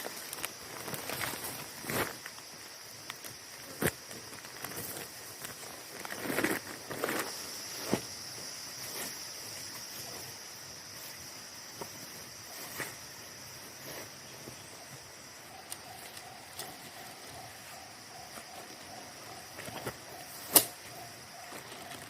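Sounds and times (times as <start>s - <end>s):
crackles and clicks: 0.0s - 8.0s, 15.2s - 22.0s
insects droning: 0.0s - 22.0s.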